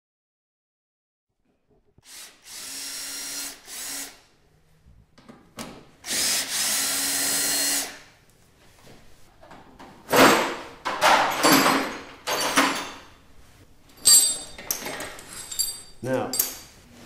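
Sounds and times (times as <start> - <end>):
power drill spinning: 2.0 - 4.2, 6.0 - 8.1.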